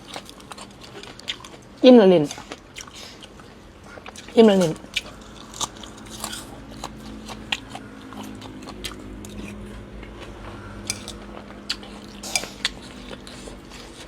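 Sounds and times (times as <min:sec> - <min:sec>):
chewing: 0:00.0 - 0:14.0
utensils clinking against bowl: 0:10.9 - 0:11.2, 0:12.2 - 0:13.1.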